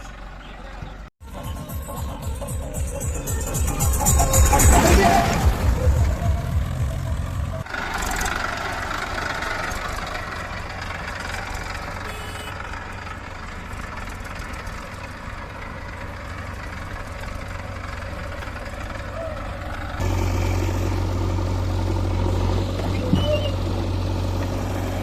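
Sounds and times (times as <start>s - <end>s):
diesel engine idling: 0.0s - 25.0s.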